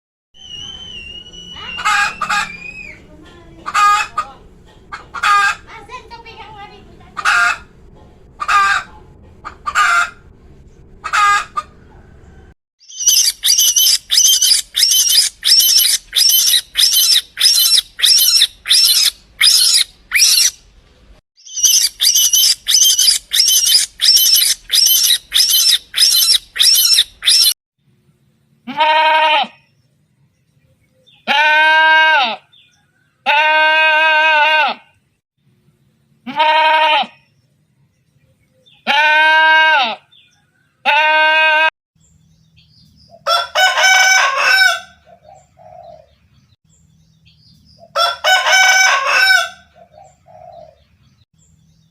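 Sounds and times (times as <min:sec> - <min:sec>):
high-pitched chirps: 0:00.4 - 0:03.0, 0:12.8 - 0:20.6, 0:21.4 - 0:27.6
wavering bleats: 0:28.7 - 0:29.6, 0:36.2 - 0:37.2, 0:38.8 - 0:40.1.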